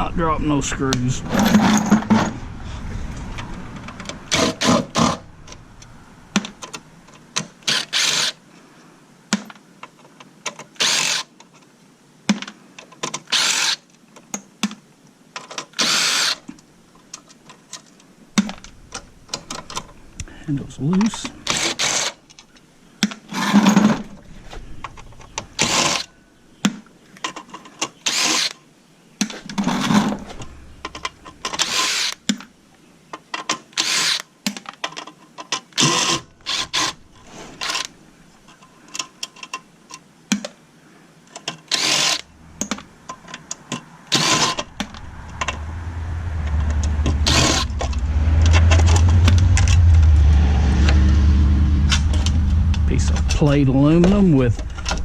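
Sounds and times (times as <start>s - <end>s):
low engine rumble: 0.0s - 7.2s, 18.2s - 21.5s, 29.4s - 31.6s, 36.2s - 38.5s, 42.2s - 55.0s.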